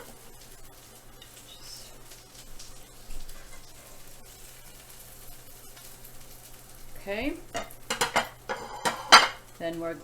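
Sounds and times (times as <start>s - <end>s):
frying pan sizzling: 0.0s - 10.0s
kitchen clicks: 7.6s - 9.4s.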